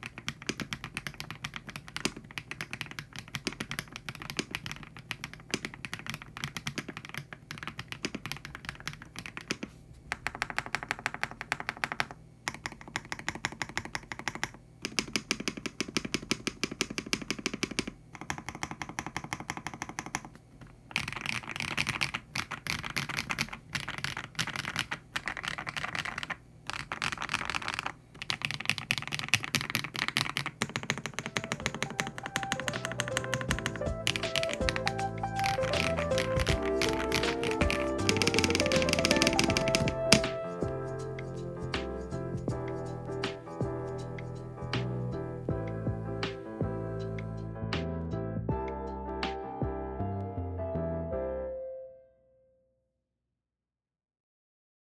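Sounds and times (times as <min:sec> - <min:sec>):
mechanical keyboard typing: 0:00.0 - 0:40.7
music: 0:31.3 - 0:52.6.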